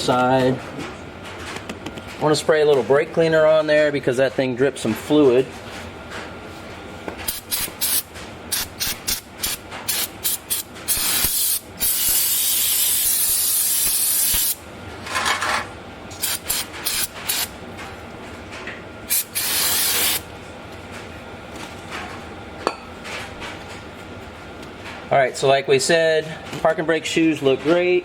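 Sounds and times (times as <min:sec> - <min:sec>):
aerosol spray: 0:09.9 - 0:14.6, 0:19.1 - 0:20.2.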